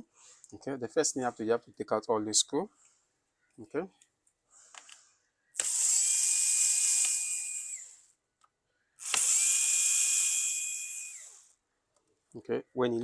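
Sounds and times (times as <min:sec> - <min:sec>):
electric screwdriver whining: 0:05.6 - 0:08.1, 0:09.0 - 0:11.5.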